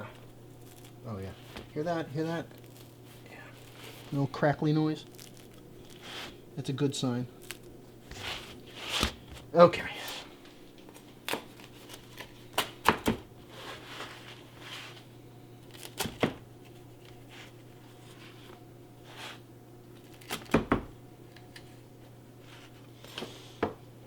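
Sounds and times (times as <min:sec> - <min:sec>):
pizza crust crunching: 0:00.0 - 0:20.5
low steady hum: 0:00.0 - 0:24.0.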